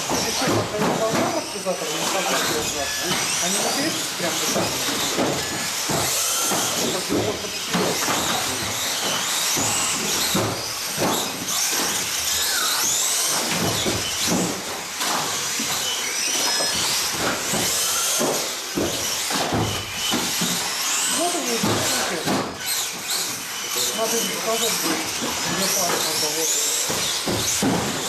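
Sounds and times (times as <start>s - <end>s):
rc car motors whining: 0.0s - 28.0s.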